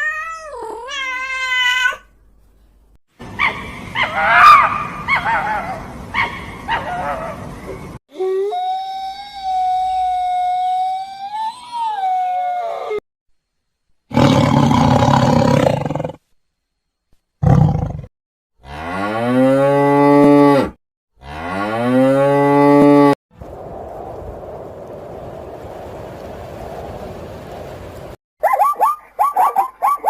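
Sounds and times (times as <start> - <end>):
canine howl: 8.2 - 13.0
cow mooing: 18.6 - 23.2.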